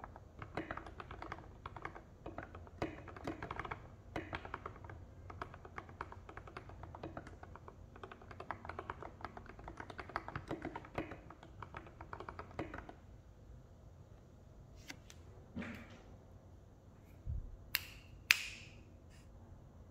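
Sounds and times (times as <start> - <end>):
mechanical keyboard typing: 0.0 - 13.0.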